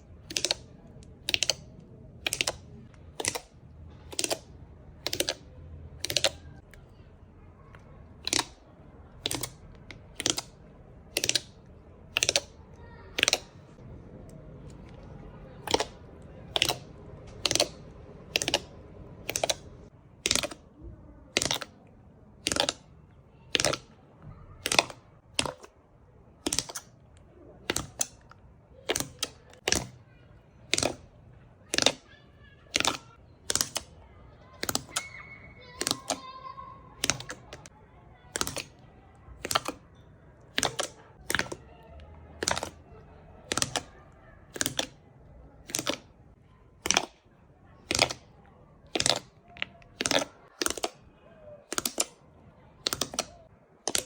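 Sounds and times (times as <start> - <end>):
slime clicking pops: 2.2 - 2.6, 9.2 - 10.5, 15.6 - 16.8, 17.4 - 19.6, 20.2 - 20.6, 22.4 - 22.8, 31.7 - 32.0, 38.3 - 38.7, 42.4 - 42.8, 43.5 - 43.9, 44.5 - 44.9, 45.6 - 46.0, 46.8 - 47.1, 47.8 - 48.2, 48.9 - 49.3, 49.9 - 51.0.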